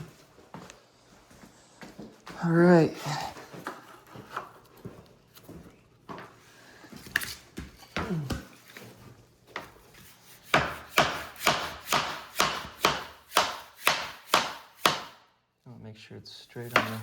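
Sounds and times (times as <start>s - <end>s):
hammer striking wood: 10.5s - 15.3s, 16.7s - 17.0s.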